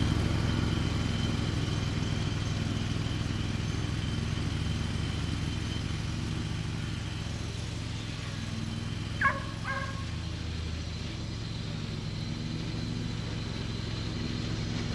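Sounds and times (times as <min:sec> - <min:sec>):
low mechanical hum: 0:00.0 - 0:14.9
dog barking: 0:09.2 - 0:10.2.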